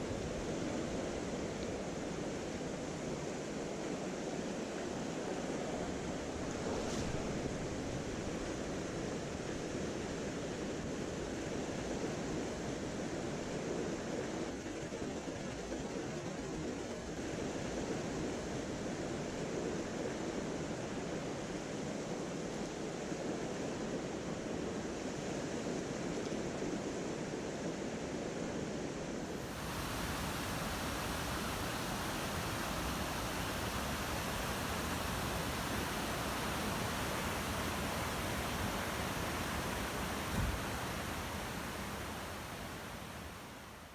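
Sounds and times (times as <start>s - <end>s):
stream water rushing: 29.3s - 43.9s
soft thump: 40.1s - 41.0s.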